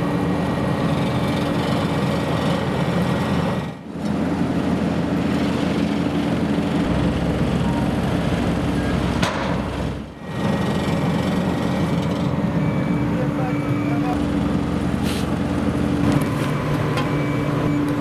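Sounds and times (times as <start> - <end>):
machinery engine running: 5.5 - 18.0.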